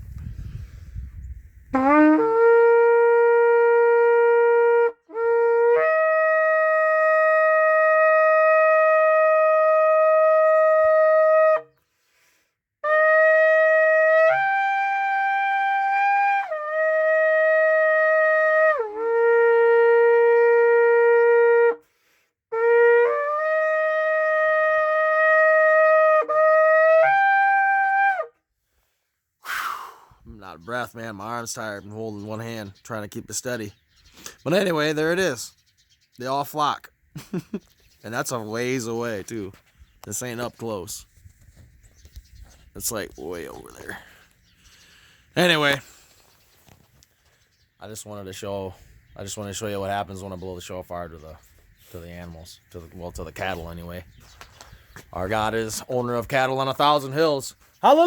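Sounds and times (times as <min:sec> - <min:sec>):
shofar blasts: 0:01.8 - 0:11.7, 0:12.8 - 0:21.8, 0:22.5 - 0:28.3.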